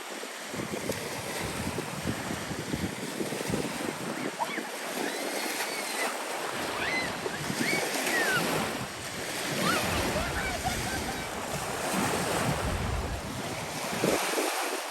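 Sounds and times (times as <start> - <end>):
sea surf: 0.0 - 14.9
wind buffeting microphone: 0.4 - 5.0, 6.5 - 14.8.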